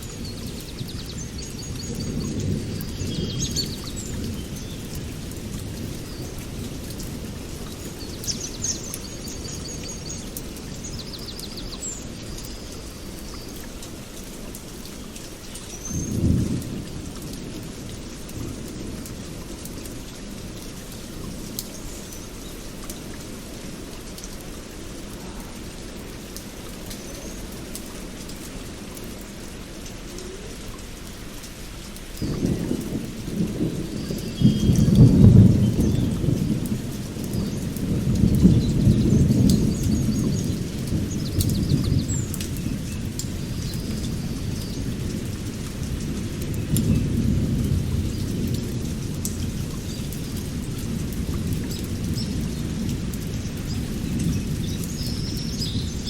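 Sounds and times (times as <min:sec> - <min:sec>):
thunder rumbling: 0:00.0 - 0:09.6, 0:16.0 - 0:19.7, 0:32.0 - 0:56.0
steady rain: 0:00.0 - 0:56.0.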